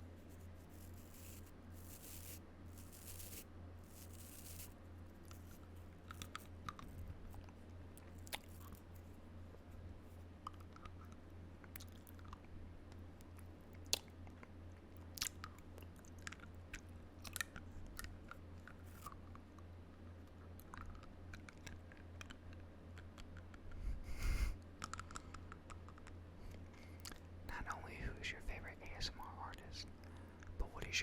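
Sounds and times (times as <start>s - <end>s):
teeth chewing on plastic: 5.2s - 9.0s, 10.4s - 12.5s, 13.3s - 23.8s.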